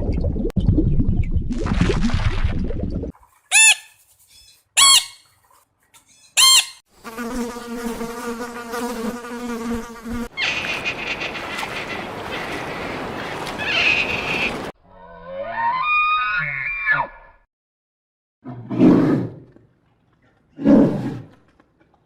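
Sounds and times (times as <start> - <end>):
loud arched calls: 3.5 - 5.2, 6.1 - 6.8, 10.3 - 14.7
insect buzz: 6.4 - 12.6.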